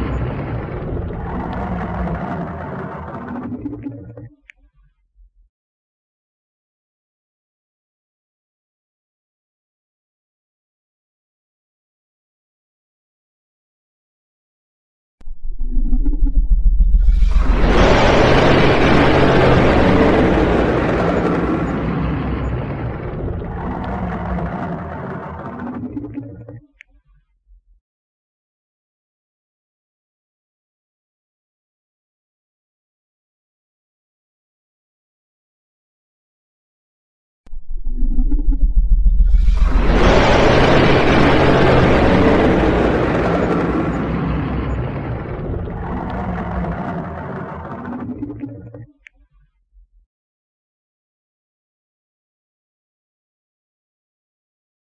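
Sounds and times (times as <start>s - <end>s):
rough rushing rumble: 0.0s - 4.1s, 15.3s - 26.6s, 37.5s - 48.9s
low drone: 0.0s - 4.5s, 15.2s - 26.8s, 37.5s - 49.1s.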